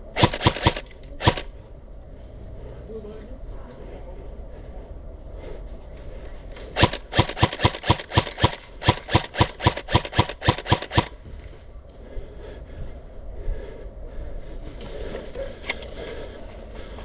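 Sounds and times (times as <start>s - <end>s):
airsoft gun shots: 0.1s - 1.5s, 6.8s - 11.2s.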